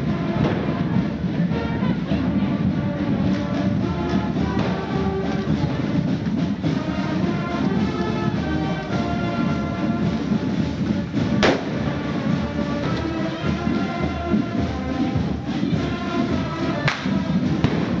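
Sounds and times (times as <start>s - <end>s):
procession band music: 0.0s - 18.0s
sharp bangs: 11.3s - 13.2s, 16.9s - 18.0s.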